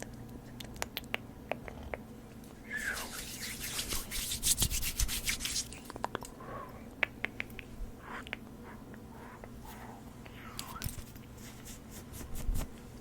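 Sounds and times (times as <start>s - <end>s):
rhythmic scratching strokes: 2.7s - 5.8s.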